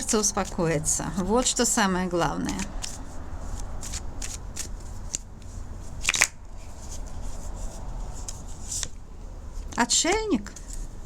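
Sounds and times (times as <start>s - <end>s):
cards slapping and sliding: 2.2s - 5.3s, 5.9s - 9.0s.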